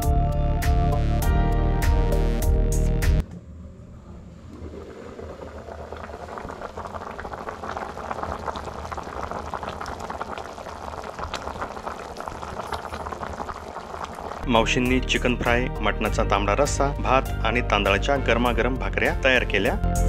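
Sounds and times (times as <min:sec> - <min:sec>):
food bubbling in a pot: 0:04.6 - 0:14.4.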